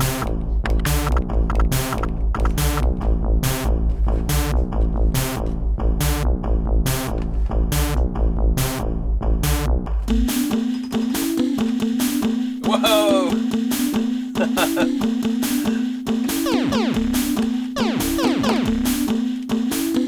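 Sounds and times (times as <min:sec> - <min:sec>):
deep bass: 0:00.0 - 0:10.3
short pitched sample notes: 0:16.5 - 0:17.2.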